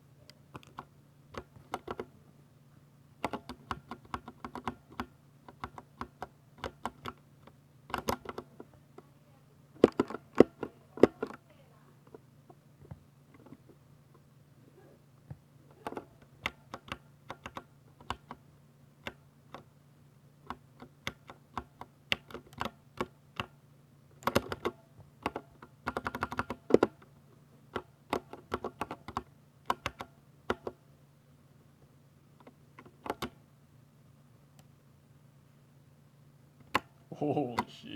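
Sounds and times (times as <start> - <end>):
mechanical keyboard typing: 3.2 - 7.2, 7.9 - 8.5, 15.8 - 18.4, 24.2 - 26.9, 27.8 - 30.8.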